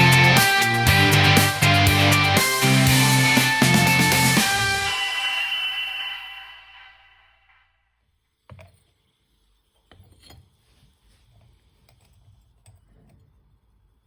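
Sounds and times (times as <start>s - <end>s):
music: 0.0s - 7.8s.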